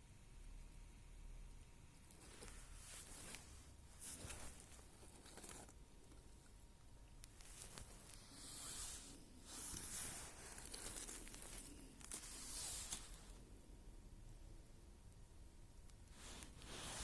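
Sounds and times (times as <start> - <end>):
rustling and scraping sticks: 2.1 - 6.4, 7.2 - 13.4, 16.1 - 17.0.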